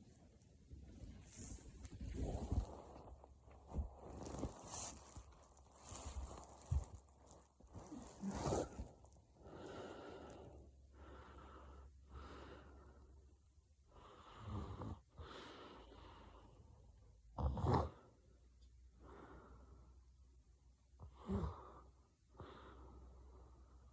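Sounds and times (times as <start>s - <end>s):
loud snort-like snore: 17.4s - 18.0s.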